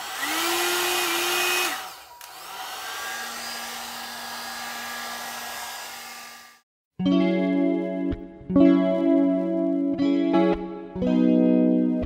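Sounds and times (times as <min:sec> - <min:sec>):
hair dryer motor hum: 0:00.0 - 0:06.6
guitar music: 0:07.0 - 0:12.0.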